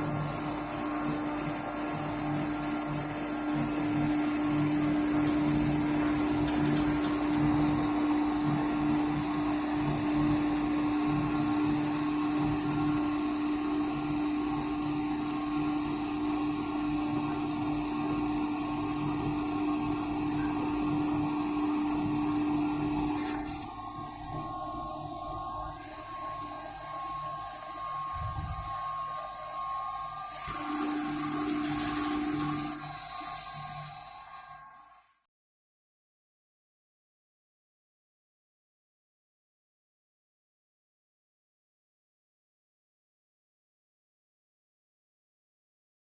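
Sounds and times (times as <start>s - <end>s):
router spindle high-pitched whine: 0.0s - 35.3s.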